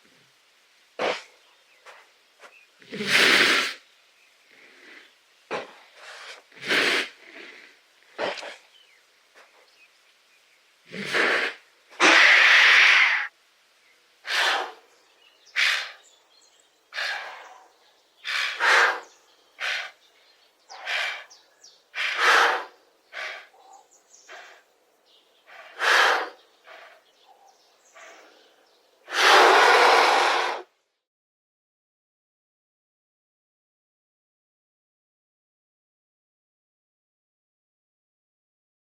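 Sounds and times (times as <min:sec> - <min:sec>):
giraffe snorting: 0:01.0 - 0:03.8, 0:04.5 - 0:09.7, 0:10.8 - 0:13.3, 0:14.2 - 0:14.9, 0:15.5 - 0:16.2, 0:16.9 - 0:24.7, 0:25.4 - 0:30.7.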